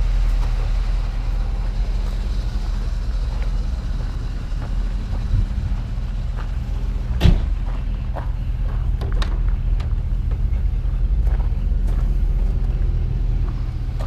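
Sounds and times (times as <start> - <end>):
car engine rumbling: 0.0 - 14.0
sharp clunk: 7.2 - 7.6.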